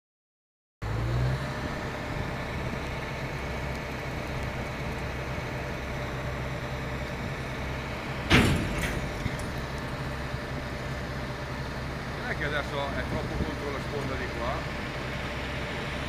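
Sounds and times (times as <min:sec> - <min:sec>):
truck engine running: 0:00.8 - 0:16.0.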